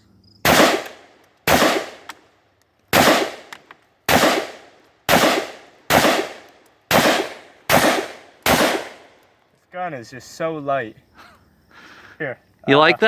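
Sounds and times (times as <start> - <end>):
rifle shots with echo: 0.4 - 2.2, 2.9 - 9.2.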